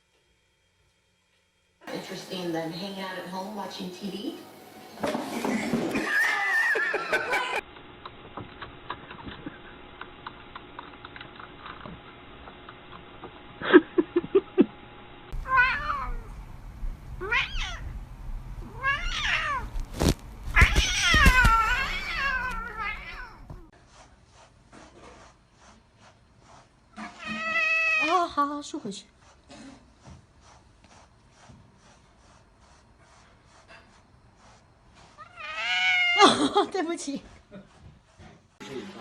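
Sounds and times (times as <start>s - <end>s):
cat meowing and yowling: 6.0s - 7.0s, 15.4s - 16.3s, 17.2s - 17.9s, 18.6s - 19.7s, 20.6s - 23.4s, 27.0s - 28.1s, 35.2s - 36.2s.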